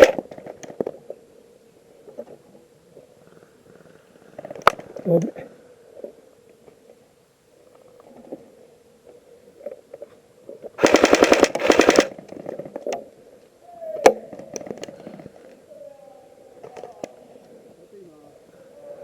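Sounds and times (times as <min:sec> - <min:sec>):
airsoft rifle full-auto bursts: 0:00.0 - 0:00.2, 0:10.8 - 0:12.1
faint clicks: 0:16.6 - 0:17.6.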